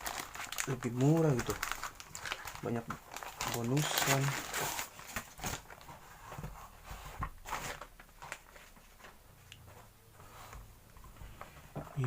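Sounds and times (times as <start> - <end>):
plastic packaging rustling: 0.0 - 6.5, 7.4 - 9.3.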